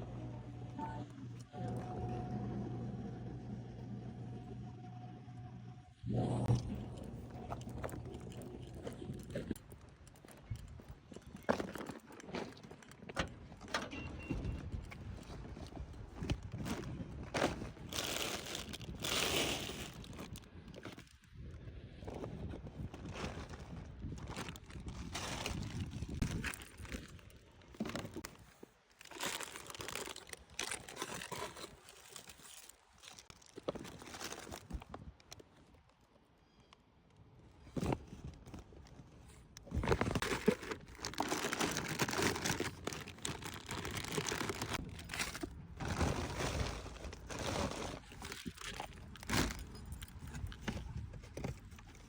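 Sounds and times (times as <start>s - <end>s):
packaging crinkling: 17.4s - 21.2s, 23.0s - 35.3s, 39.6s - 50.6s.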